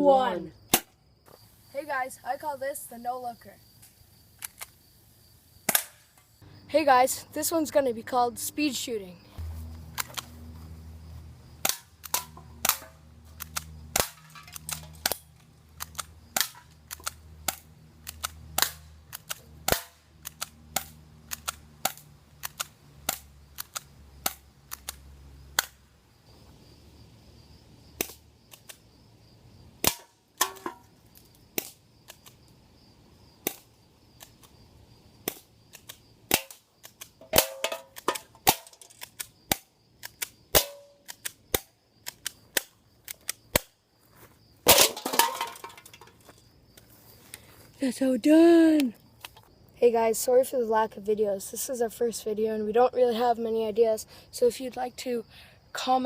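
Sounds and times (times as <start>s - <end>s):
airsoft gun shots: 5.7s - 6.1s, 18.2s - 23.2s.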